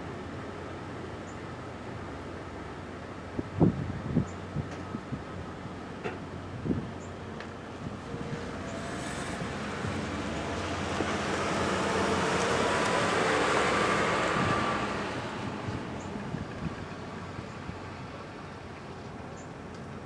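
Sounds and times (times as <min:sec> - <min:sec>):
wind noise: 0:03.3 - 0:05.7, 0:06.4 - 0:07.0, 0:07.7 - 0:18.1.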